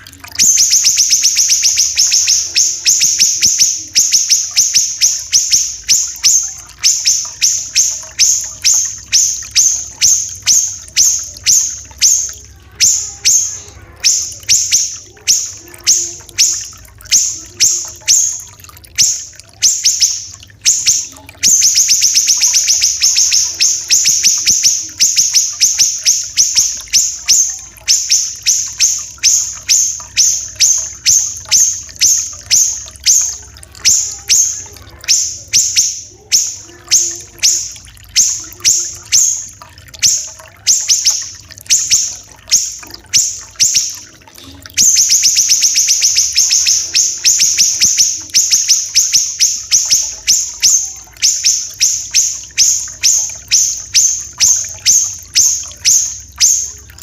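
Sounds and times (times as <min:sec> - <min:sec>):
faint trickling water: 0:00.0 - 0:57.0
songbird calling high notes: 0:00.0 - 0:57.0.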